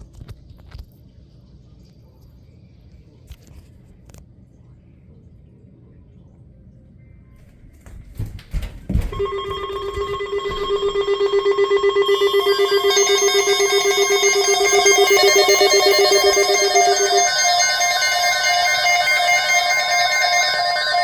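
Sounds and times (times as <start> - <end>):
pulsing electronic alert tone: 9.2 - 21.0.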